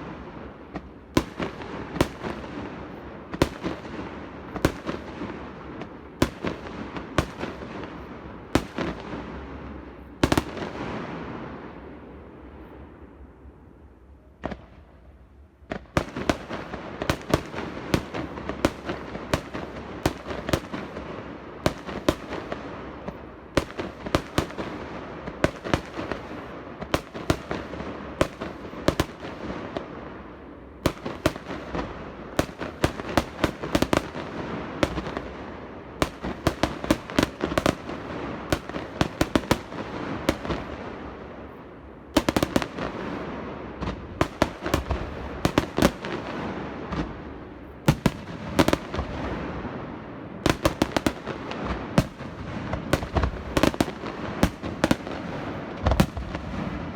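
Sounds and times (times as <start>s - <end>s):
fireworks cracks and bangs: 0.0s - 13.2s, 14.3s - 56.9s
fireworks crackling: 0.0s - 13.4s, 14.0s - 56.9s.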